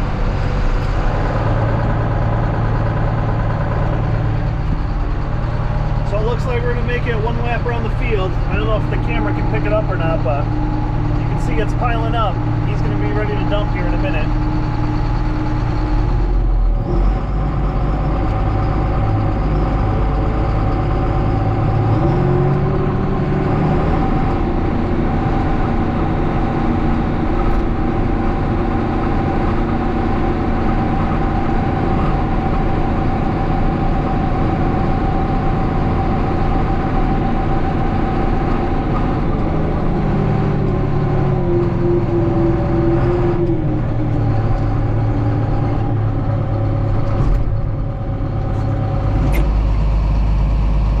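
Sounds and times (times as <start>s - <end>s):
tractor engine running under load: 0.0s - 51.0s.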